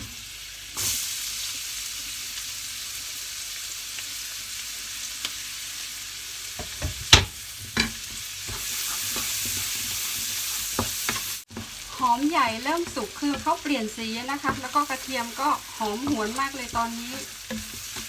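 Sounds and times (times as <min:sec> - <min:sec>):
onion sizzling in a pan: 0:00.0 - 0:18.0
utensil knocking against pan: 0:14.3 - 0:18.0.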